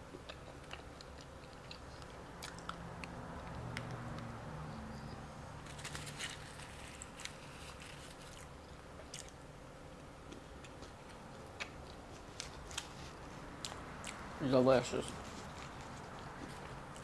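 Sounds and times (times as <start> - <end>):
faint low hum: 0.0 - 17.0
person chewing with mouth clicks: 0.1 - 4.3, 13.6 - 14.3.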